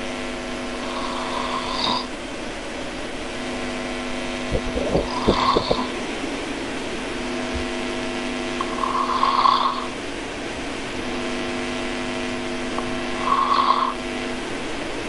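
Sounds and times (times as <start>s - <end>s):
steady hum: 0.0s - 15.0s
person snoring: 0.7s - 2.1s, 4.5s - 6.0s, 8.6s - 10.0s, 12.8s - 14.1s.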